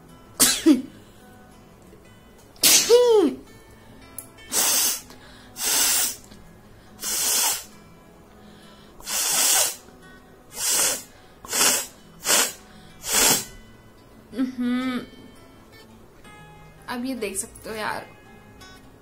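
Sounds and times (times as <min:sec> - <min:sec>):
person blowing air through nose: 0:02.6 - 0:03.2, 0:04.4 - 0:07.8, 0:09.0 - 0:09.9, 0:10.5 - 0:13.6.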